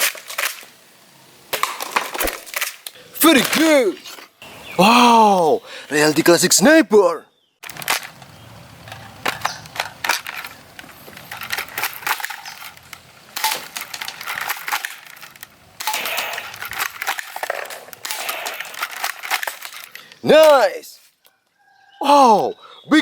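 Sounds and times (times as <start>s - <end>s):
plastic toy clicks and knocks: 7.6s - 20.6s
rustling: 7.6s - 21.3s.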